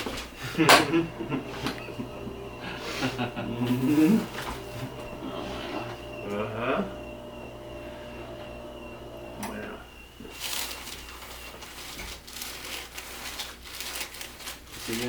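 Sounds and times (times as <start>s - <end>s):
steady low hum: 0.4s - 10.2s
rustling and shuffling on table: 10.2s - 15.0s.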